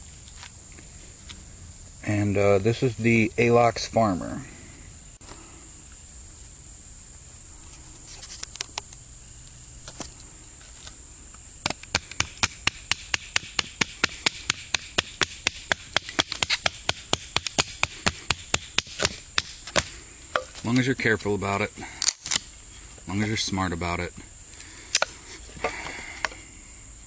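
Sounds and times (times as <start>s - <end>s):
high insect drone: 0.0s - 27.0s
fast sharp knocks: 11.6s - 19.9s.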